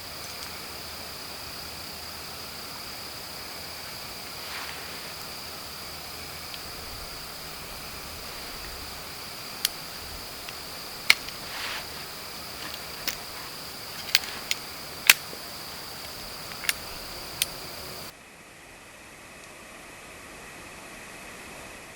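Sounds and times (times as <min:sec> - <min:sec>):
insect chorus drone: 0:00.0 - 0:21.8
quiet hiss: 0:00.0 - 0:21.9
sharp pops and clicks: 0:06.4 - 0:18.1.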